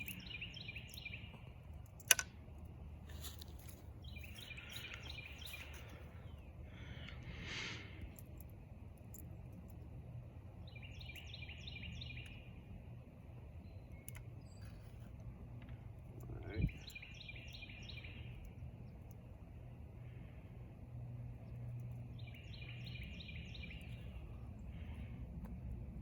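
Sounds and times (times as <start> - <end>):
bird chirping: 0.0 - 2.0, 3.6 - 8.2, 10.5 - 12.8, 13.4 - 20.3, 21.4 - 25.2
outdoor background noise: 0.0 - 26.0.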